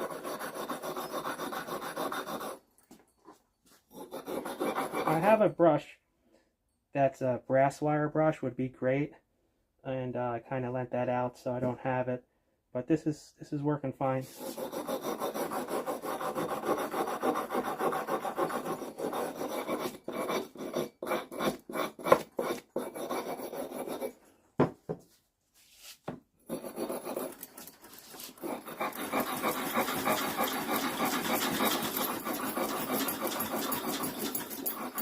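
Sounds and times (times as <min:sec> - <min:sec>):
wire brush scrubbing metal: 0:00.0 - 0:02.6, 0:04.1 - 0:05.4, 0:14.2 - 0:24.2, 0:26.5 - 0:35.0.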